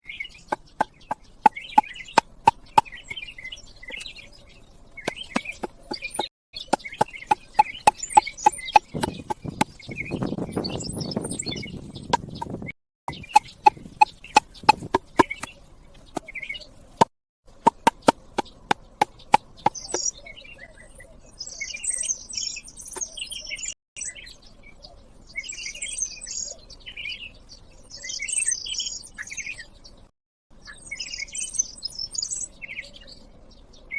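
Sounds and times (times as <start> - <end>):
birds chirping: 0.0 - 33.9
rough scraping noise: 5.1 - 9.8.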